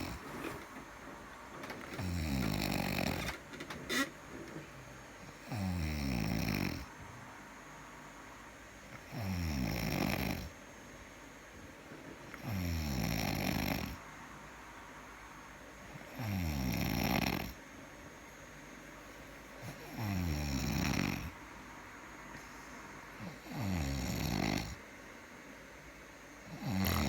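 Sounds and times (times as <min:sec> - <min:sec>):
snoring: 0:00.0 - 0:00.6, 0:01.9 - 0:04.1, 0:05.2 - 0:06.9, 0:08.9 - 0:10.6, 0:12.3 - 0:14.0, 0:15.9 - 0:17.6, 0:19.6 - 0:21.4, 0:23.2 - 0:24.8, 0:26.4 - 0:27.0.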